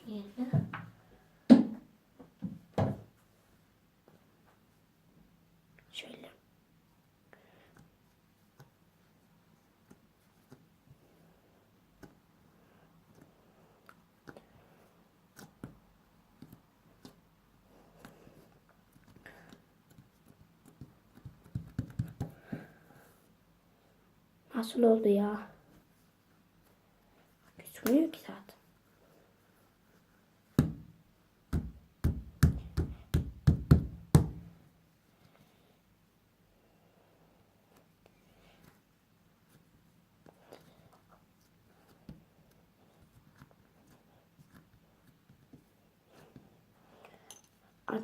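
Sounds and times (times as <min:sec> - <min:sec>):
sharp knocks on hard surface: 0:01.5 - 0:01.8.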